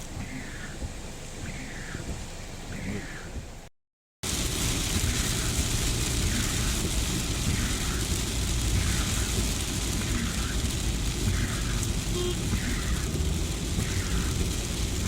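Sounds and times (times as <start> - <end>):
tyres on wet road: 0.0 - 15.0
rain rushing: 4.2 - 15.0.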